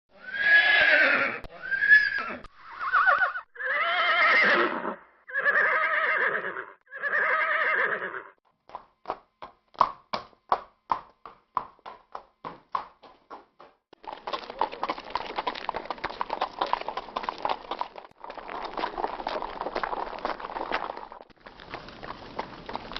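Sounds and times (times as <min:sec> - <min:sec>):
horse whinnying: 0:00.2 - 0:08.4
hooves clip-clopping: 0:08.5 - 0:22.9.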